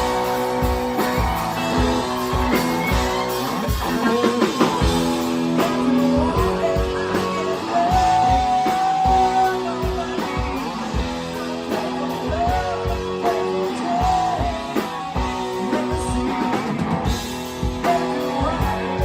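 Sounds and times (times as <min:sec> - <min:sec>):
bass: 0:00.0 - 0:19.0
drum kit steady beat: 0:00.0 - 0:19.0
guitars: 0:00.0 - 0:19.0.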